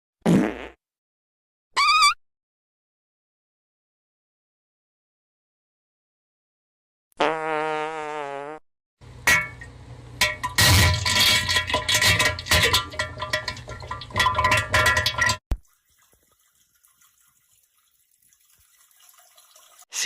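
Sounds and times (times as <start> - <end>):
wobbling fart sound effect: 0.2 - 0.8, 7.2 - 8.6.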